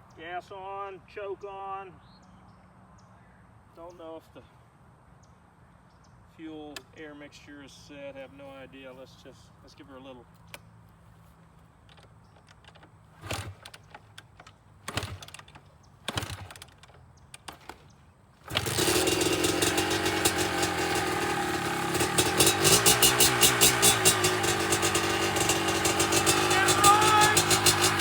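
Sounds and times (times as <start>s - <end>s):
dirt bike engine kick-starting: 11.9s - 28.0s
two-stroke engine running: 13.2s - 14.0s, 14.8s - 28.0s.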